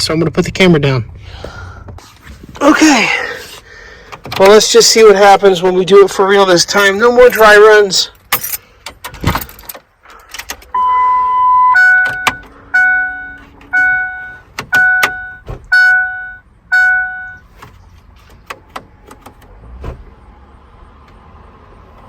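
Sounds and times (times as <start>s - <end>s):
dashboard warning chime: 10.7s - 17.4s.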